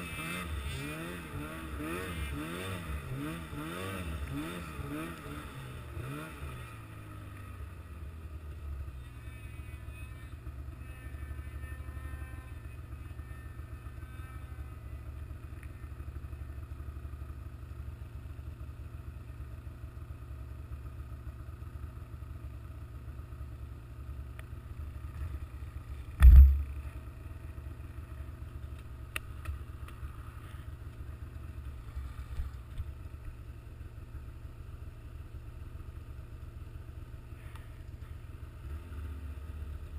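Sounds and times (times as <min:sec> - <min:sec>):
vehicle engine revving and idling: 0:00.0 - 0:39.9
loud thump: 0:26.2 - 0:26.7.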